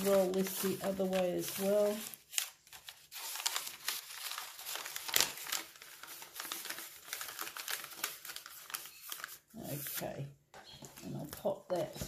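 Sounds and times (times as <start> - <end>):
plastic film crinkling and crackling: 0.0 - 10.3.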